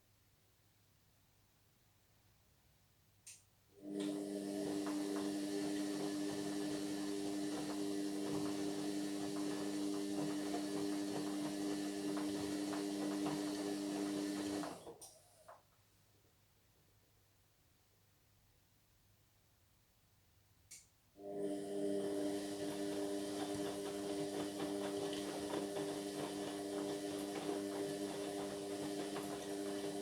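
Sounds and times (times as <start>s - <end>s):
washing machine humming: 3.8s - 15.0s, 21.2s - 30.0s.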